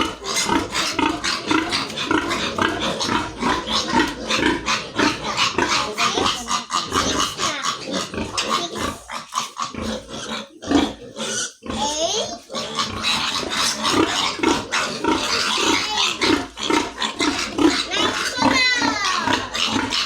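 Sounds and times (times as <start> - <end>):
pig squealing: 0.0 - 20.0
pigs grunting: 0.0 - 20.0.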